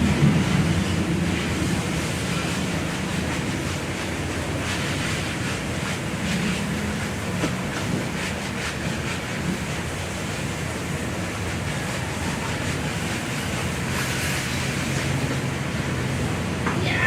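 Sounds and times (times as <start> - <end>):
low motor drone: 0.0 - 3.2
pressure washer spraying water: 0.0 - 17.0.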